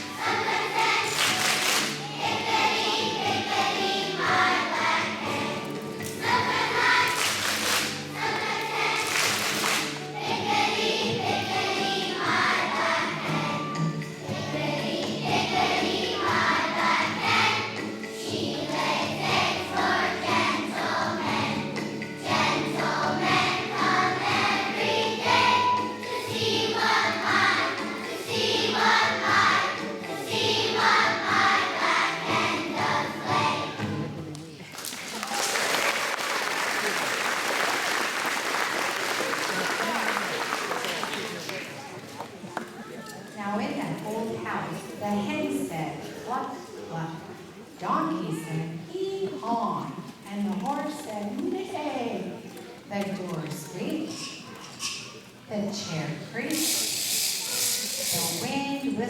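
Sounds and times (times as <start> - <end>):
children's choir singing: 0.0 - 34.2, 56.4 - 58.9.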